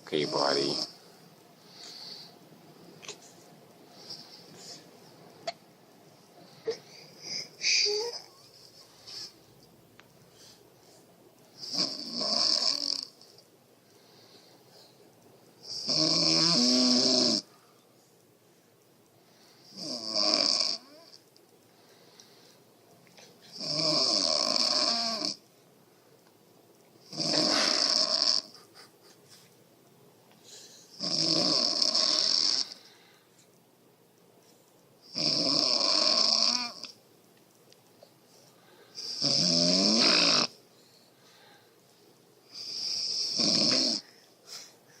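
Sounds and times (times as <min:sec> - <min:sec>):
woman snoring: 0:11.6 - 0:13.2, 0:15.7 - 0:17.5, 0:19.7 - 0:21.1, 0:23.5 - 0:25.4, 0:27.1 - 0:28.6, 0:30.9 - 0:32.8, 0:35.1 - 0:36.9, 0:39.0 - 0:40.6, 0:42.6 - 0:44.1.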